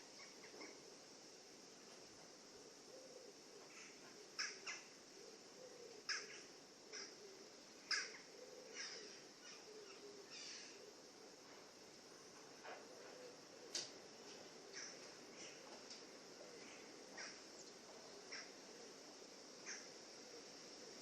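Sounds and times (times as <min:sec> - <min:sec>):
faint steady hiss: 0:00.0 - 0:21.0
harsh bird squawks: 0:03.7 - 0:04.9.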